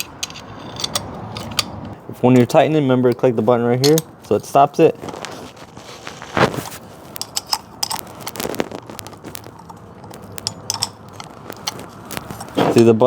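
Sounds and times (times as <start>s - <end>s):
spanner clicking on grinder nut: 0.0s - 2.0s, 7.2s - 8.0s.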